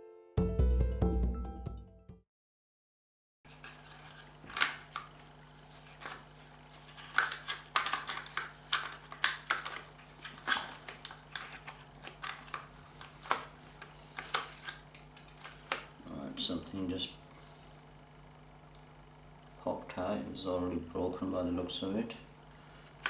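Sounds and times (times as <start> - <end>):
small plastic parts clicking: 7.1 - 13.5.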